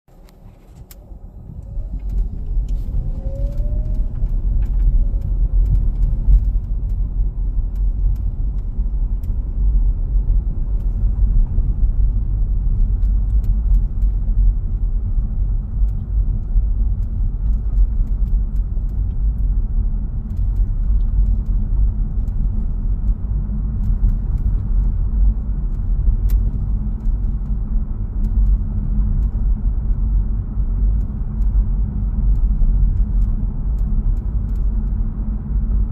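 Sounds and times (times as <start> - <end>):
road and tyre rumble in car: 0.0 - 35.9
faint clicks and creaks: 0.1 - 9.8, 15.2 - 19.6, 28.2 - 35.0.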